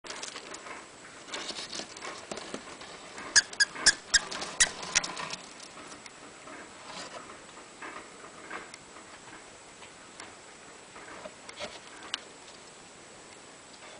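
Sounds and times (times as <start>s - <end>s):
sharp clicks or squeaks: 3.3s - 5.2s.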